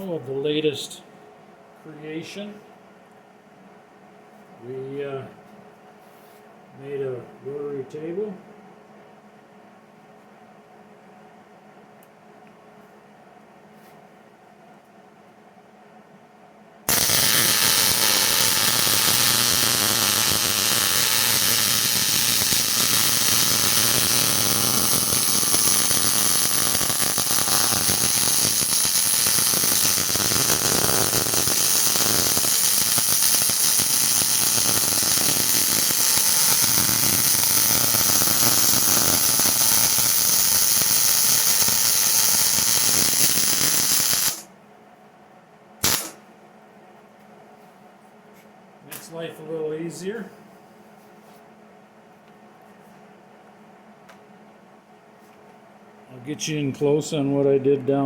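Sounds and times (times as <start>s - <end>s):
welding arc crackling hiss: 16.9s - 44.5s, 45.8s - 46.2s.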